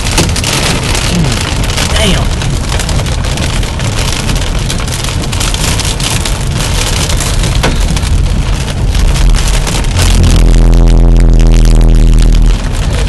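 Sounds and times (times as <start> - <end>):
hail and rain on car roof: 0.0 - 13.0
steady low hum: 9.9 - 12.6.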